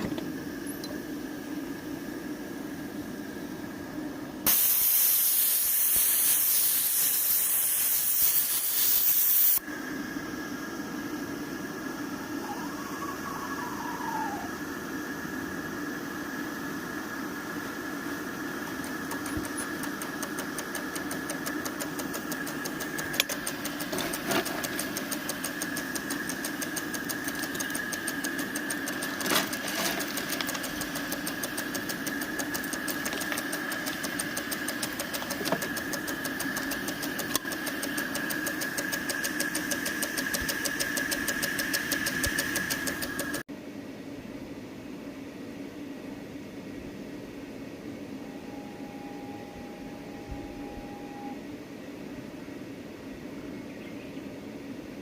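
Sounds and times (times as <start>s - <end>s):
steady high hiss: 0.0s - 43.5s
steam locomotive exhaust beating: 16.0s - 43.4s.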